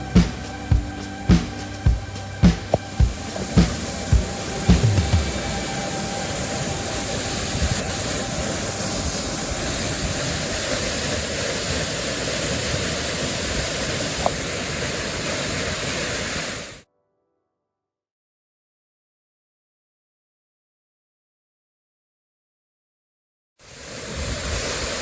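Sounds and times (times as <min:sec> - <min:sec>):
waterfall pouring: 0:00.0 - 0:16.7.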